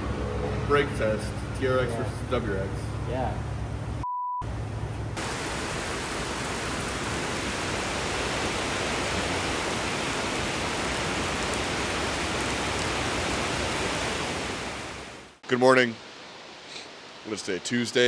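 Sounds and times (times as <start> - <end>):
heavy rain falling: 5.2 - 18.0.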